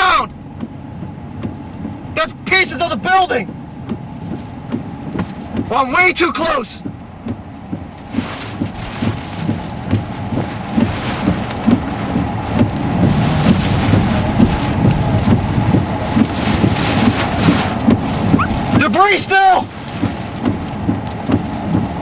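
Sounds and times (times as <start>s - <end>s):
wind: 0.0s - 22.0s
irregular knocks and thumps: 0.3s - 2.4s, 3.4s - 6.0s, 6.8s - 18.9s, 19.7s - 22.0s
heavy rain: 7.9s - 22.0s.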